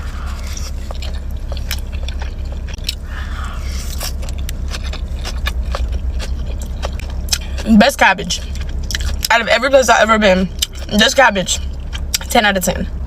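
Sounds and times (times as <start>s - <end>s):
close chewing with mouth clicks: 0.0s - 9.6s, 10.4s - 11.0s
steady low rumble: 0.0s - 13.0s.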